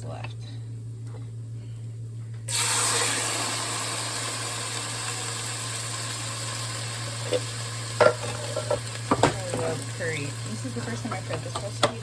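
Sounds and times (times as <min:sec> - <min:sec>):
chicken sizzling in a pan: 0:02.5 - 0:12.0.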